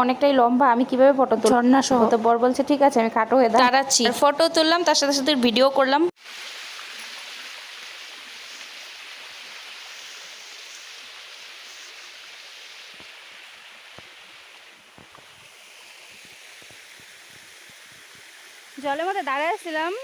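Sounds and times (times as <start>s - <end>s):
waterfall splashing: 6.2s - 20.0s.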